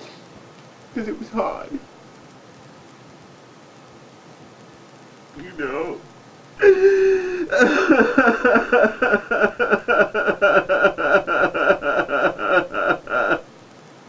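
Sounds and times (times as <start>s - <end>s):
man sobbing: 5.4s - 6.0s, 6.6s - 13.5s.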